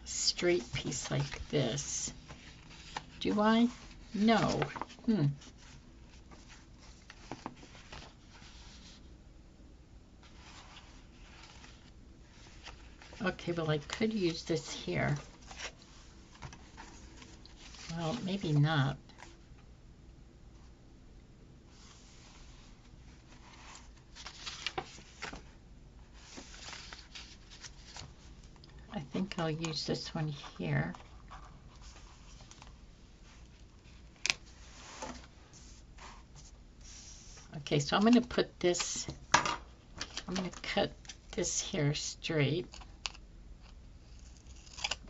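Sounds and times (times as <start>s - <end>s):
paper sheets rustling: 0.4s - 9.0s, 22.2s - 25.5s, 26.2s - 28.3s
light paper crinkles and taps: 38.0s - 41.3s.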